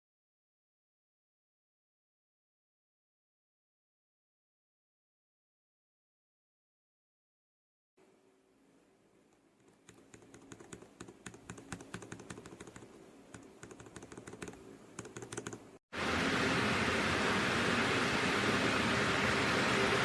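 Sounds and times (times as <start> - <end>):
mechanical keyboard typing: 9.6 - 15.7.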